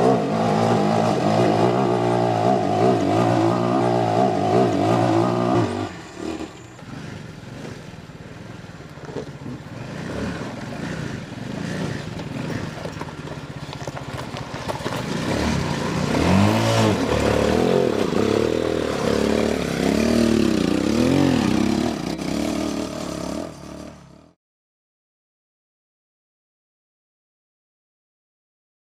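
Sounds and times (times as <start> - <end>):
atv engine revving: 0.0 - 24.4.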